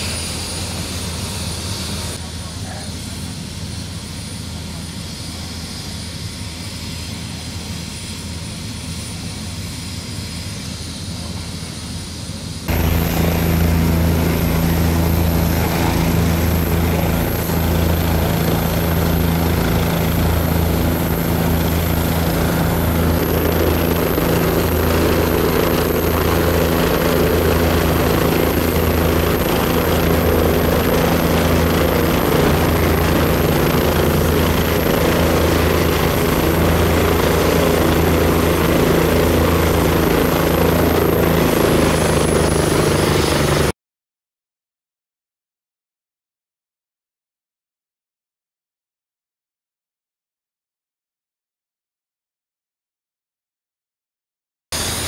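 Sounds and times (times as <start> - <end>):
helicopter rotor and engine drone: 0.0 - 43.8, 54.8 - 55.0.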